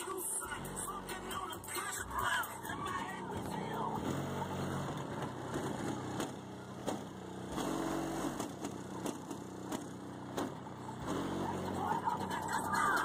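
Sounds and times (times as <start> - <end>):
loud bass-heavy music: 0.0 - 6.8, 10.9 - 13.0.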